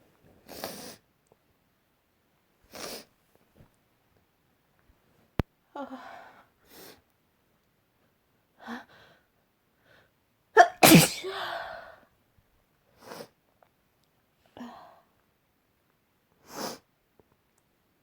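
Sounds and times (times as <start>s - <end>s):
sniff: 0.4s - 1.0s, 2.7s - 3.1s, 13.0s - 13.4s, 16.4s - 16.9s
person sneezing: 10.6s - 11.9s.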